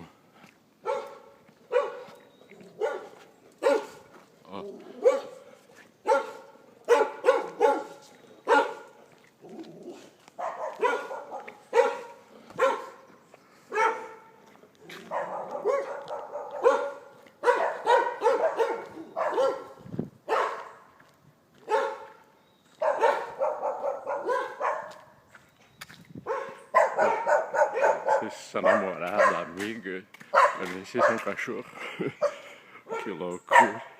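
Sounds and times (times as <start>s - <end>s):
dog barking: 0.8s - 4.1s, 4.8s - 13.1s, 13.7s - 20.9s, 21.6s - 22.2s, 22.8s - 25.1s, 26.2s - 29.6s, 30.3s - 31.4s, 32.2s - 33.9s.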